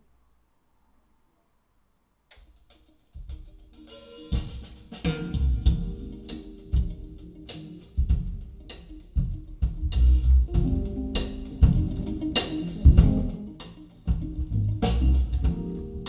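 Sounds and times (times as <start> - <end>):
drums with cymbals: 2.4 - 16.0
low bass: 9.8 - 13.4, 14.1 - 16.0.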